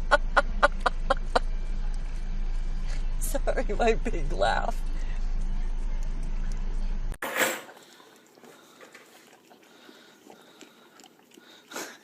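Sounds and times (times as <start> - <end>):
dog licking wet smacks: 9.0 - 12.0.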